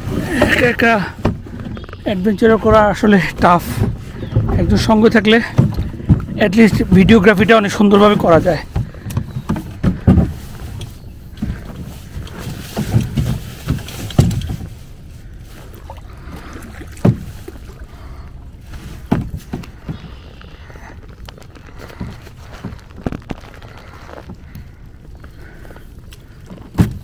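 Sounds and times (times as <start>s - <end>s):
paddle strokes in water: 0.0s - 27.0s
dull knocks on boat: 3.6s - 7.4s, 16.9s - 17.4s, 19.0s - 20.2s.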